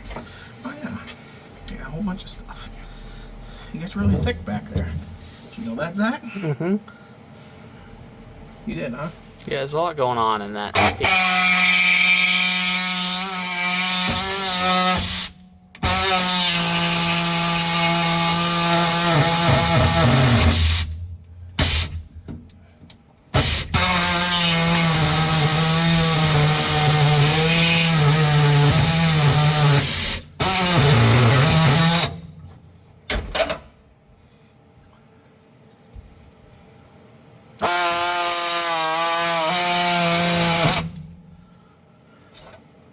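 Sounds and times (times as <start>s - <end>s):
power tool cutting metal: 10.8s - 20.9s, 23.4s - 32.2s, 37.6s - 41.0s.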